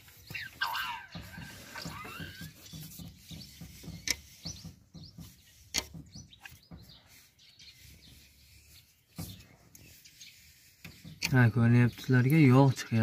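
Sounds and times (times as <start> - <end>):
birds chirping: 0.0 - 13.0
spanner clicking and knocking on engine: 1.1 - 7.0, 10.8 - 13.0.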